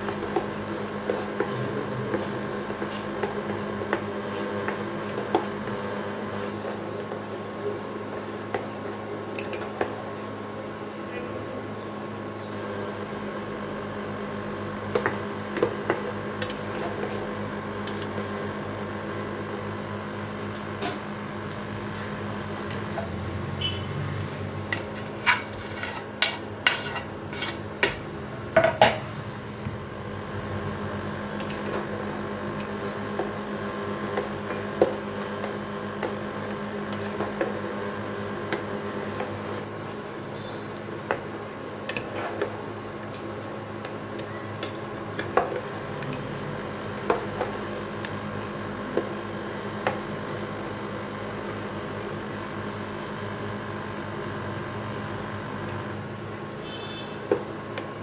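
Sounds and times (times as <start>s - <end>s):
steady background hum: 0.0s - 58.0s
metal utensil scraping a pot: 24.3s - 27.7s.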